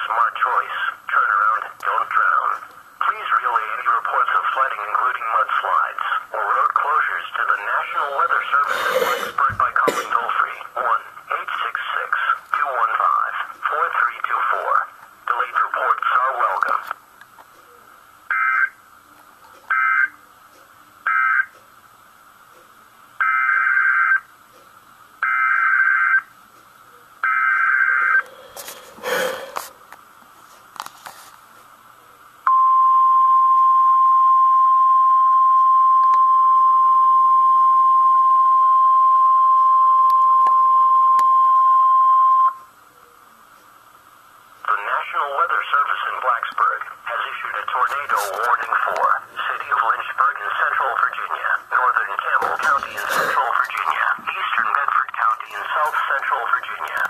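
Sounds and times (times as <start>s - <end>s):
crackle of noise: 9.4s - 17.6s, 42.5s - 57.0s
steady warning alarm tone: 18.3s - 18.8s, 19.7s - 20.2s, 21.1s - 21.6s, 23.2s - 24.4s, 25.2s - 26.4s, 27.2s - 28.4s, 32.5s - 42.8s.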